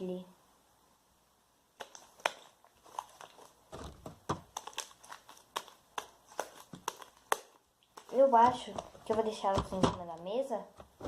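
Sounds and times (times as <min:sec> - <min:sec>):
slime squished by hand: 0:01.8 - 0:08.7.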